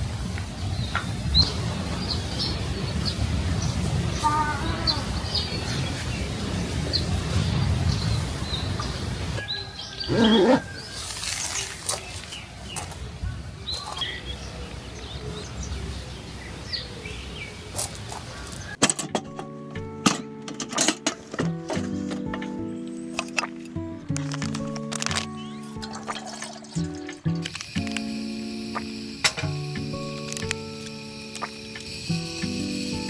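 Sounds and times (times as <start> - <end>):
birds chirping: 0.6 - 18.8, 21.4 - 27.5
music: 18.8 - 33.0.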